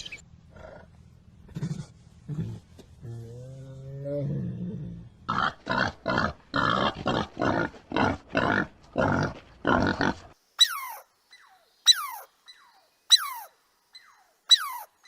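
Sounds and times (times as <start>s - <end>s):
harsh animal calls: 5.3s - 15.0s.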